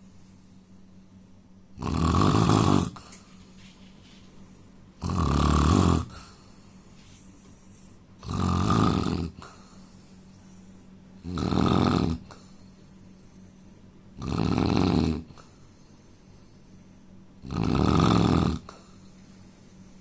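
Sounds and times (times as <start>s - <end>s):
man snoring: 1.8s - 3.0s, 5.0s - 6.3s, 8.2s - 9.5s, 11.2s - 12.4s, 14.2s - 15.4s, 17.4s - 18.8s.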